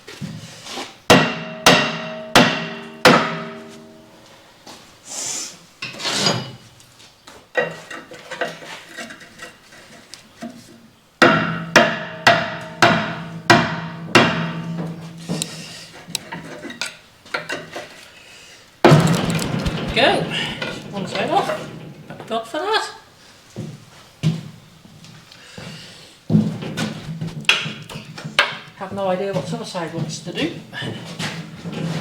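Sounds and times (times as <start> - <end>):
hammer striking steel: 1.1 - 4.0.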